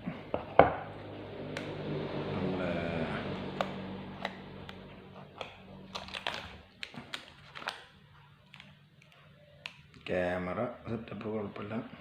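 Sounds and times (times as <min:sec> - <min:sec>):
low hum: 0:00.0 - 0:07.1.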